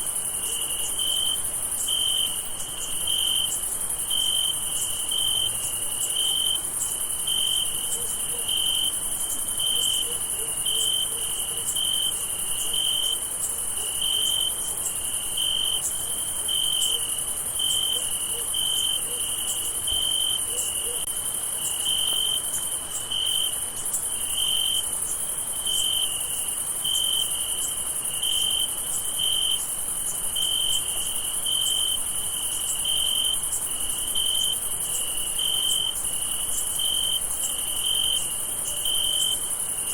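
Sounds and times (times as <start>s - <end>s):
crickets trilling: 0.0s - 39.9s
near cricket chirping rhythmically: 0.0s - 39.9s.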